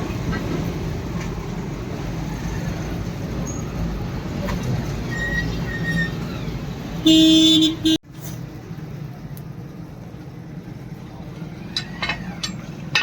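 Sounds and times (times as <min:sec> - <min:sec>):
low mechanical rumble: 0:08.1 - 0:13.0.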